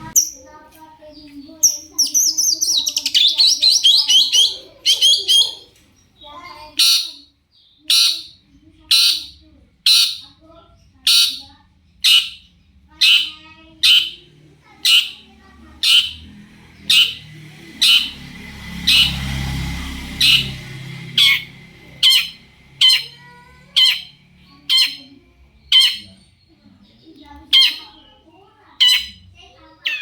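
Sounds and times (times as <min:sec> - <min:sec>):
shrike harsh scratchy calls: 0:02.0 - 0:05.7, 0:07.9 - 0:10.3, 0:11.1 - 0:12.4, 0:13.0 - 0:26.1.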